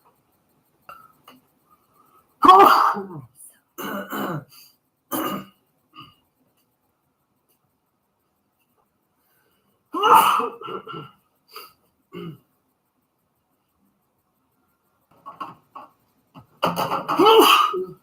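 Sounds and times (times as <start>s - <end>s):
man sneezing loudly: 2.4s - 3.2s.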